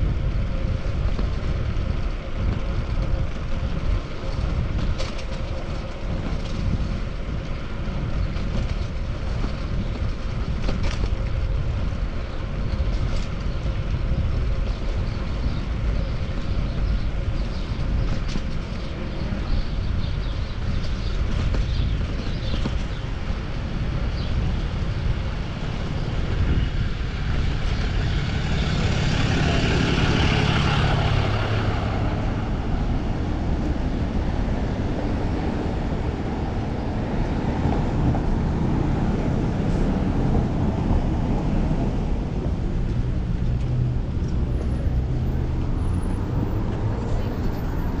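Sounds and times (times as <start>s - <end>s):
road traffic: 0.0s - 48.0s
wind on microphone: 0.0s - 48.0s
vehicle passing: 26.8s - 48.0s.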